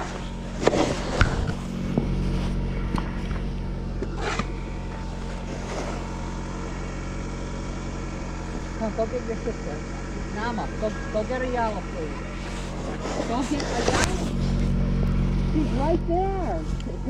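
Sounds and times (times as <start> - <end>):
snow shovels scraping snow: 0.0 - 7.0, 10.4 - 14.8, 15.4 - 17.0
car engine idling: 0.0 - 17.0.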